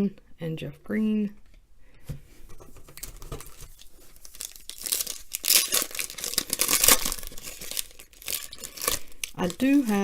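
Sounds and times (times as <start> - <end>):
foil wrapper tearing and crinkling: 3.0 - 10.0.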